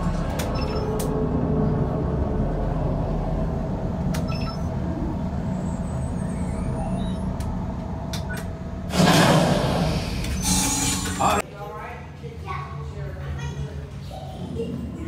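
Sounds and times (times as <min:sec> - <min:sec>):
loud burst of noise: 0:08.9 - 0:11.2.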